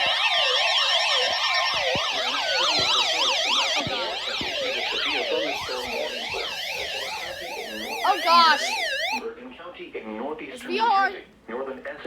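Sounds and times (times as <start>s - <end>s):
sirens wailing: 0.0s - 9.2s.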